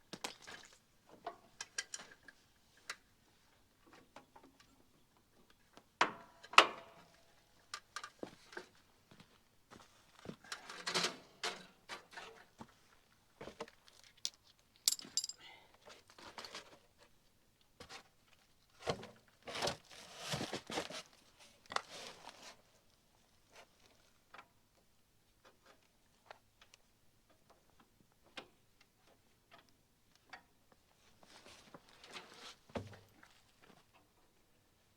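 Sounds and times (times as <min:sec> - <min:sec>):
tool clicks and metal clinks: 0:14.2 - 0:15.4
rustling and scraping: 0:18.9 - 0:22.7, 0:31.2 - 0:33.4.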